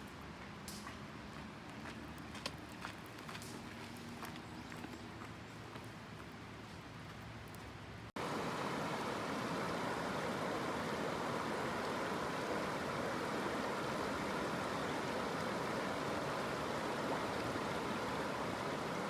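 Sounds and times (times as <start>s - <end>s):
flowing water rushing: 8.2s - 19.0s.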